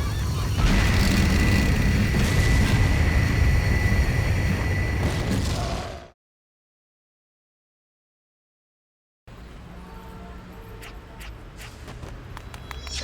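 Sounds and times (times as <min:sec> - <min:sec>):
heavy rumbling noise: 0:00.2 - 0:06.0.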